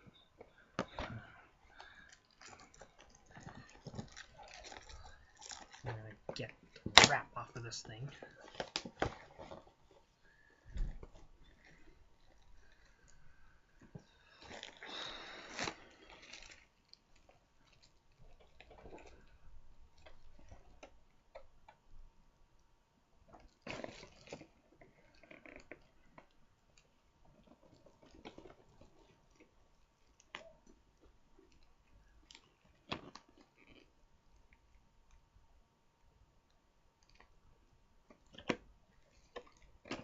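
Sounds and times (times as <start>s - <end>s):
plastic wrap crinkling and tearing: 1.7s - 9.9s, 14.3s - 19.3s.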